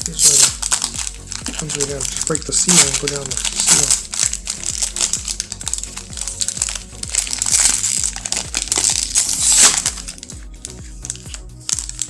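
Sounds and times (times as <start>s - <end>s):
background music: 0.0s - 12.0s
plastic wrapper crinkling: 0.0s - 12.0s.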